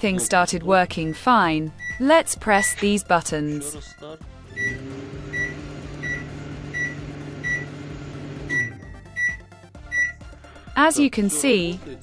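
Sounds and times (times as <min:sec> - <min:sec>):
microwave oven humming: 0:04.5 - 0:10.1.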